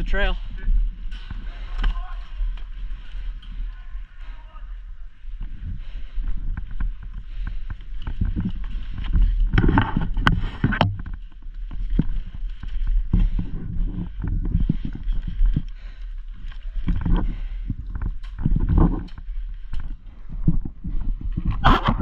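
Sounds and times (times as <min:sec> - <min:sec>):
low wind rumble: 0:00.0 - 0:22.0
footsteps: 0:05.1 - 0:22.0.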